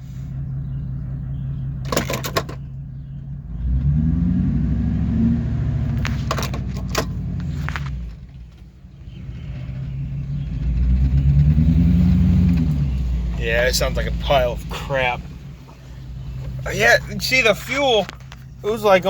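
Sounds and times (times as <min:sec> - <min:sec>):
truck engine misfiring: 0:00.0 - 0:19.0.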